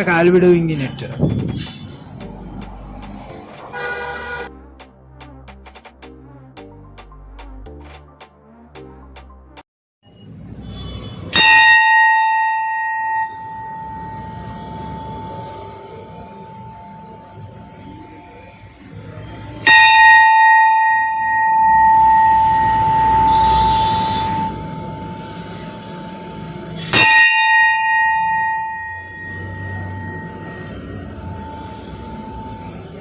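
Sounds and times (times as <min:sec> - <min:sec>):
bronze bell ringing: 0:11.3 - 0:17.1, 0:19.6 - 0:33.0.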